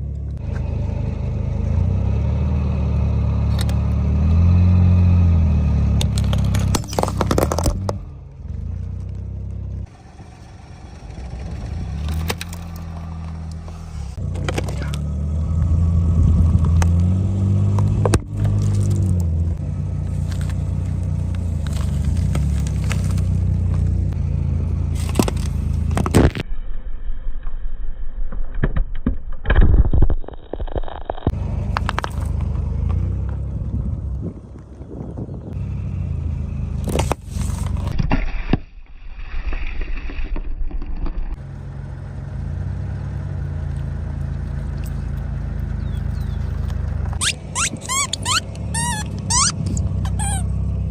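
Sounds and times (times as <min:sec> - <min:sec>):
car engine running at low speed: 0:00.0 - 0:26.4, 0:31.2 - 0:38.0, 0:41.2 - 0:50.9
tyres crushing objects: 0:06.0 - 0:08.0.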